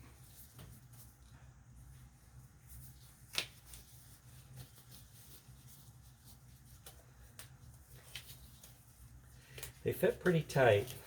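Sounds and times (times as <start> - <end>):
rubber glove rustling: 0.0 - 11.0
latex glove snap: 3.3 - 3.8.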